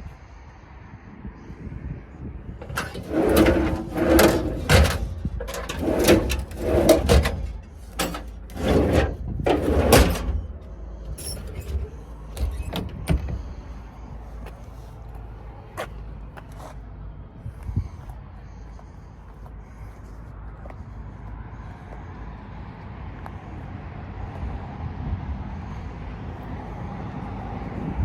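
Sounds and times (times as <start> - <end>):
truck doors rattling and sliding: 2.6 - 14.0.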